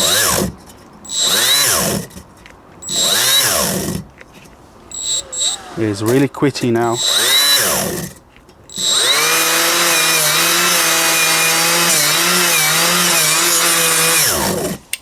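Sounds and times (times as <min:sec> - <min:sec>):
die grinder cutting metal: 0:00.0 - 0:02.2, 0:02.8 - 0:04.1, 0:05.0 - 0:14.9.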